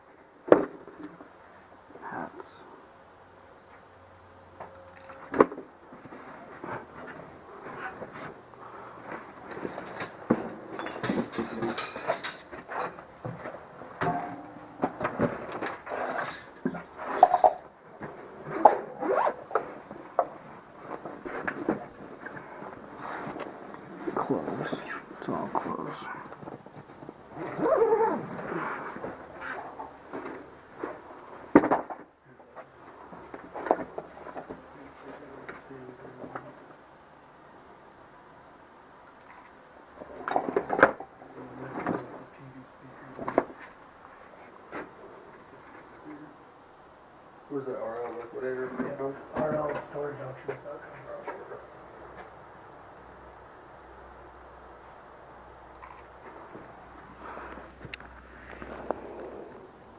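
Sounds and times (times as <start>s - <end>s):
scattered clicks: 4.8s - 5.3s
knocks and clatter of items moved: 9.0s - 36.6s, 40.0s - 42.3s.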